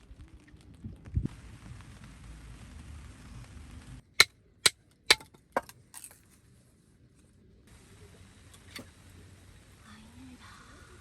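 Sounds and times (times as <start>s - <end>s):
sharp knocks: 5.1s - 5.7s.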